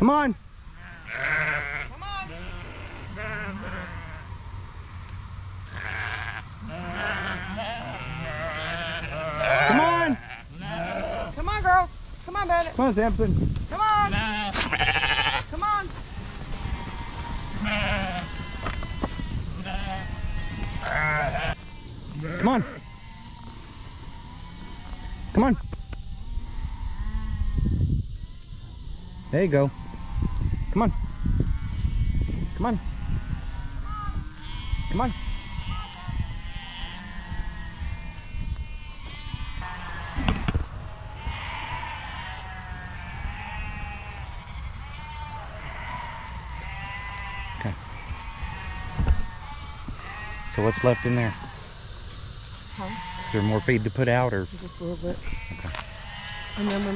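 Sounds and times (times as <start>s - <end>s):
sheep bleating: 0.7s - 4.4s, 5.7s - 11.9s, 13.8s - 25.4s, 29.0s - 51.7s, 52.7s - 53.8s, 55.2s - 56.9s.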